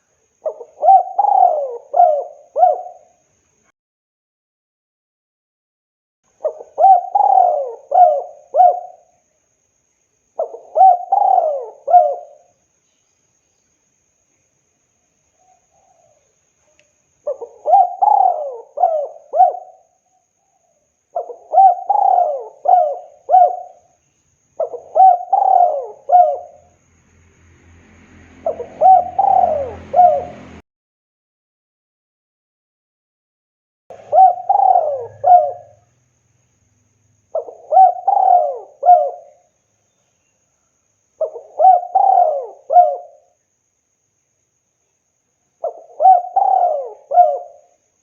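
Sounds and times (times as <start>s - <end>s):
dove cooing: 0.4s - 3.2s, 6.4s - 9.1s, 10.4s - 12.5s, 17.2s - 20.0s, 21.1s - 23.9s, 24.6s - 26.7s, 28.4s - 30.6s, 33.9s - 35.9s, 37.3s - 39.5s, 41.2s - 43.4s, 45.6s - 47.8s.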